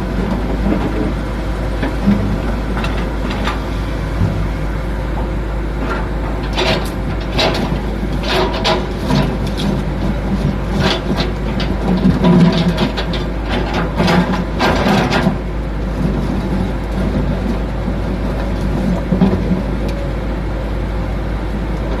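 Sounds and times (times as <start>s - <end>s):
excavator diesel engine rumbling: 0.0s - 22.0s
sharp knocks and clatter: 5.8s - 15.4s.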